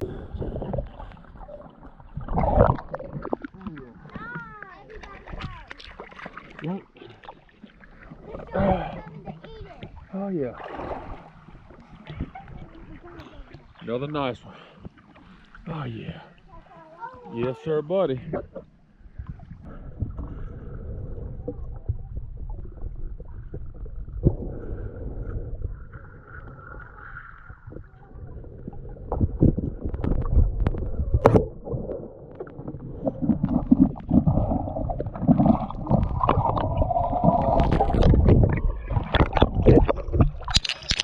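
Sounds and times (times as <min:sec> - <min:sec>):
muffled underwater swirling: 0:00.0 - 0:41.0
underwater clicks and knocks: 0:29.1 - 0:41.0.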